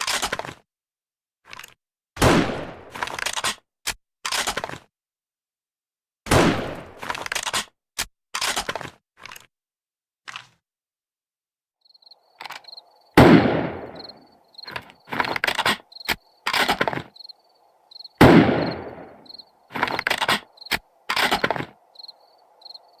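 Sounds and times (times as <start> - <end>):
rifle shots: 2.2 - 3.5, 6.3 - 7.1, 13.2 - 14.2, 18.2 - 19.2
crickets chirping: 11.8 - 13.2, 13.8 - 23.0.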